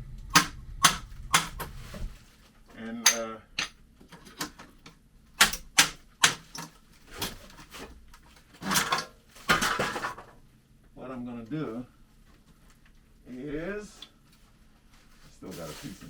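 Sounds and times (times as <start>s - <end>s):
metallic knocks and clanks: 0.3s - 1.8s, 3.0s - 4.6s.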